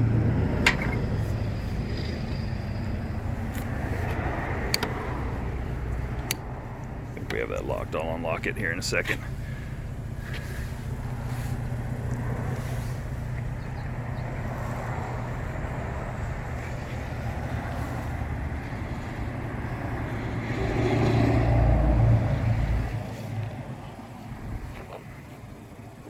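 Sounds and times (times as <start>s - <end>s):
vehicle engine humming: 0.0s - 26.0s.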